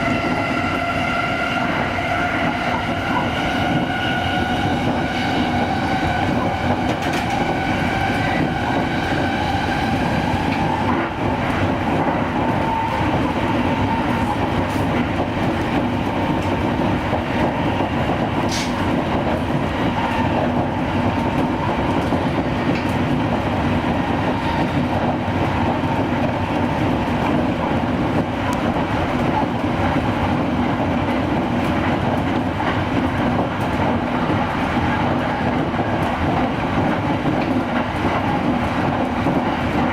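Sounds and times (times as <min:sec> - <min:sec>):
train wheels rolling on rails: 0:00.0 - 0:39.9.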